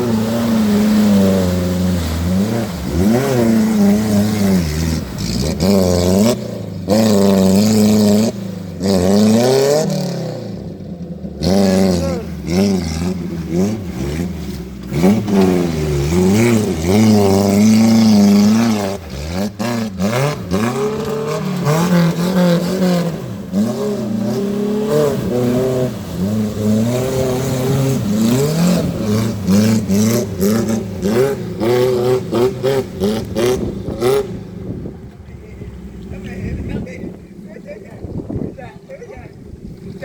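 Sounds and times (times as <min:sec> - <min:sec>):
off-road vehicle engine revving: 0:00.0 - 0:40.0.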